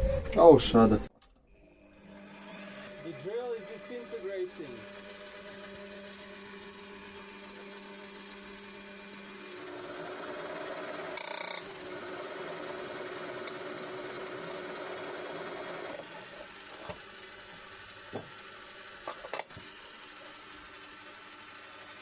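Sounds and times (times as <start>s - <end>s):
electric drill boring steel: 1.6s - 22.0s.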